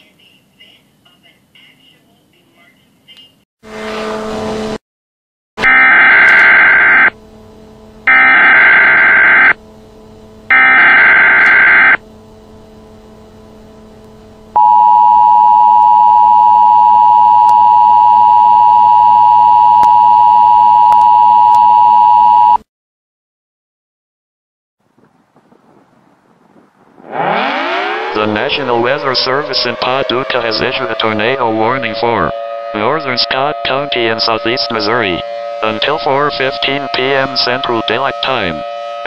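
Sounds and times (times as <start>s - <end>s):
data tone bursts: 5.6s - 7.2s, 8.1s - 9.6s, 10.5s - 12.0s, 14.6s - 22.6s
two-tone attention signal: 5.6s - 7.2s, 8.1s - 9.6s, 10.5s - 12.0s, 14.6s - 22.6s.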